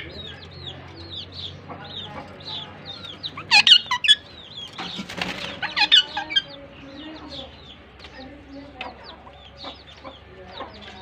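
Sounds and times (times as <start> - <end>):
parakeets chirping: 0.0 - 11.0
wings fluttering: 4.8 - 6.0.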